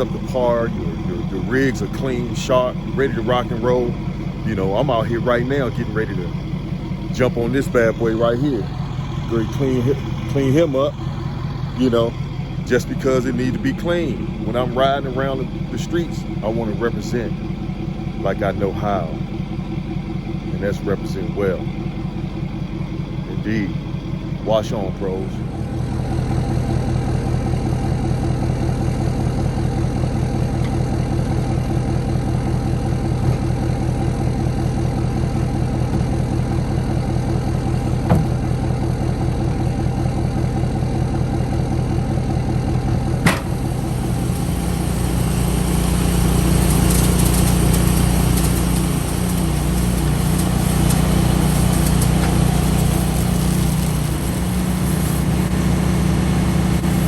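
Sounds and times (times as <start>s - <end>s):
engine running: 0.0s - 57.0s
hiss: 43.4s - 57.0s.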